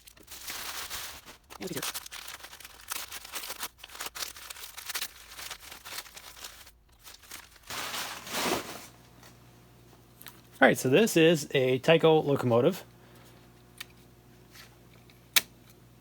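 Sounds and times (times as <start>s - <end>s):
packing material crinkling: 0.0s - 9.4s.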